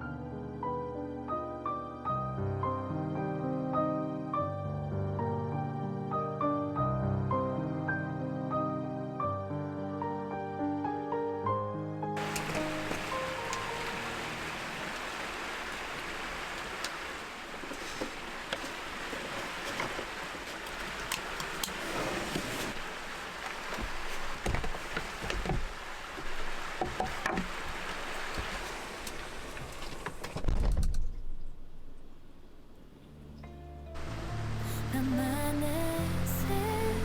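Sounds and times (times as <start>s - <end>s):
stream flowing: 12.2s - 30.2s, 34.0s - 37.0s.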